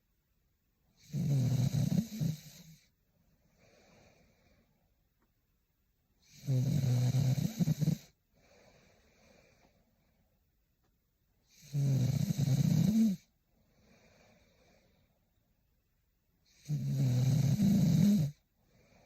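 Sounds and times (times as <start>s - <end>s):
woman snoring: 1.0s - 2.8s, 6.2s - 8.1s, 11.5s - 13.3s, 16.5s - 18.4s
faint breaths: 2.0s - 5.1s, 7.4s - 10.6s, 12.8s - 15.5s, 17.6s - 19.0s.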